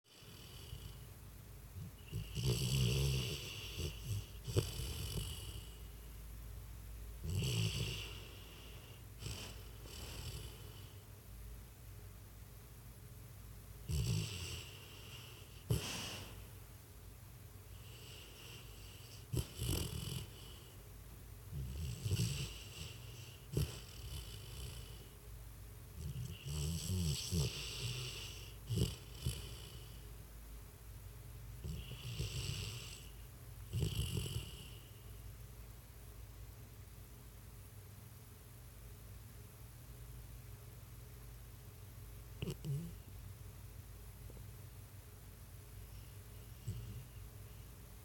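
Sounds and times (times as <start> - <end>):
dog snoring: 0.0 - 1.1, 1.8 - 6.0, 7.2 - 11.0, 13.8 - 16.5, 17.7 - 20.8, 21.5 - 25.2, 26.0 - 30.0, 31.6 - 35.1, 42.4 - 43.1, 45.9 - 47.3.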